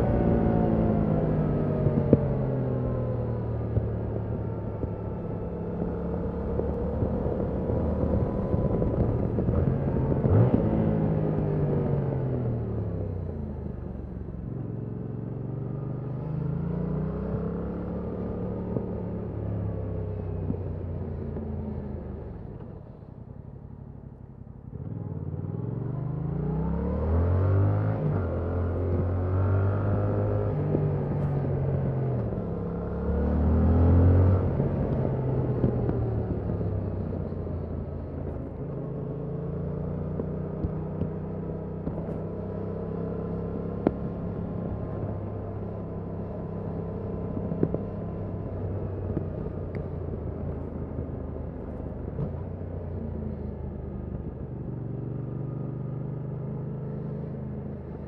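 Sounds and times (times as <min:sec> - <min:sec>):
motorcycle engine revving: 0:24.8 - 0:58.0.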